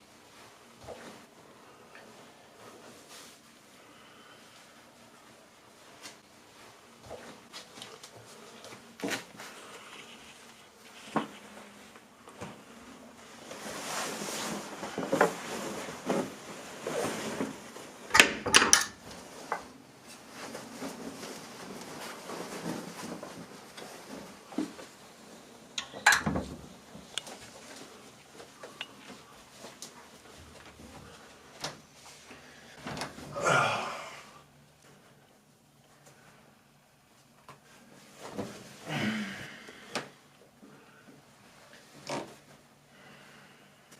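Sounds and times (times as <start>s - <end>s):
clothes rustling: 0.0s - 18.1s, 19.0s - 33.8s
heavy breathing and grunts: 33.3s - 34.4s, 38.8s - 39.8s.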